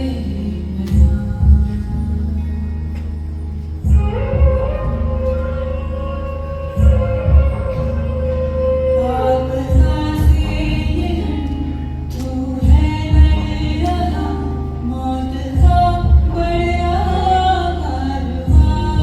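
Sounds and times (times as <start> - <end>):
musical accompaniment: 0.0 - 19.0
voices singing slow song: 0.0 - 19.0
low beat hits: 0.9 - 2.4, 3.7 - 11.2, 12.2 - 14.2, 15.6 - 17.2.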